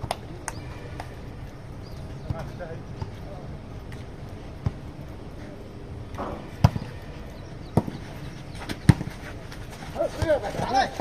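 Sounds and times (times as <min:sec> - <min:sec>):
low steady background noise: 0:00.0 - 0:11.0.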